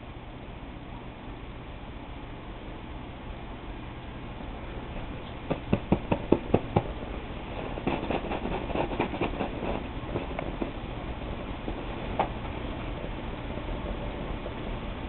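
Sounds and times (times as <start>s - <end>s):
kitten scampering and scratching: 7.6s - 10.7s.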